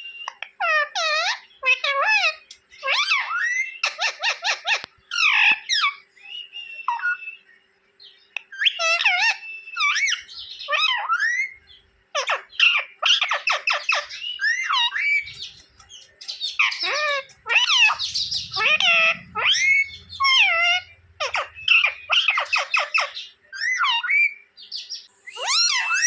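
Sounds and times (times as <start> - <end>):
parrot chirping and squawking: 12.2 - 24.4, 25.3 - 26.0.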